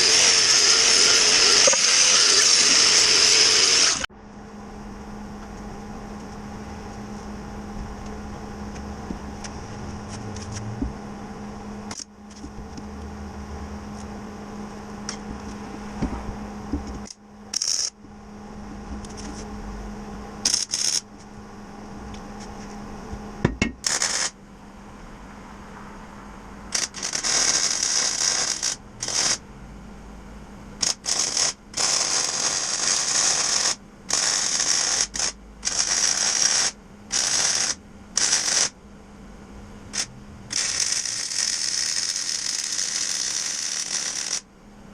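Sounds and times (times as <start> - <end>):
ratchet wrench working: 0.0 - 4.0, 17.0 - 18.0, 20.4 - 21.1, 23.8 - 24.4, 26.7 - 29.4, 30.8 - 38.8, 39.9 - 44.5
steady hum: 0.0 - 44.9.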